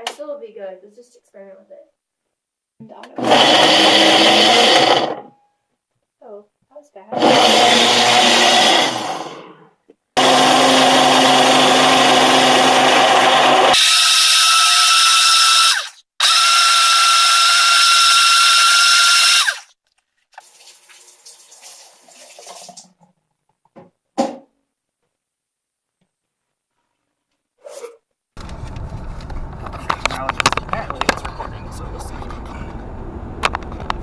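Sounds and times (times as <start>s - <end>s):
blender motor: 3.2s - 5.3s, 7.1s - 9.5s, 10.2s - 19.7s.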